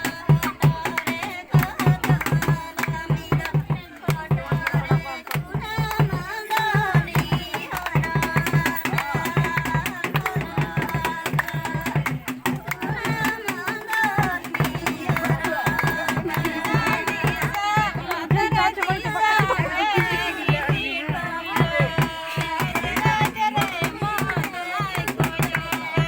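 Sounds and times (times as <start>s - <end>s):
steady drum beat: 0.0s - 26.0s
person singing: 7.6s - 26.0s.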